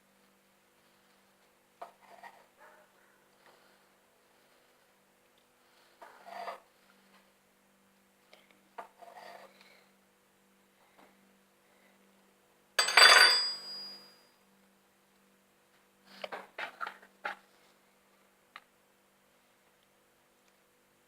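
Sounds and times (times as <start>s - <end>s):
loud ringing clink: 12.8s - 14.3s.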